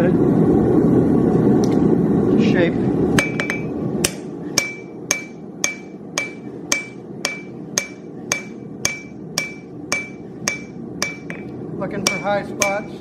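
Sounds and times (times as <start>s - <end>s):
hammer striking metal on anvil: 3.2s - 13.0s.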